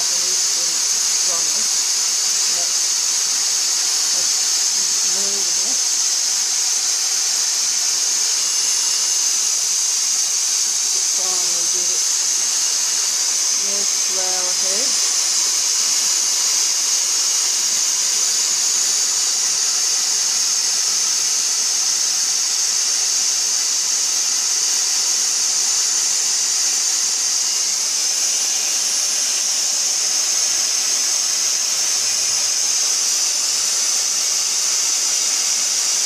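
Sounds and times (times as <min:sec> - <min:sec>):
vacuum cleaner running: 0:00.0 - 0:36.0.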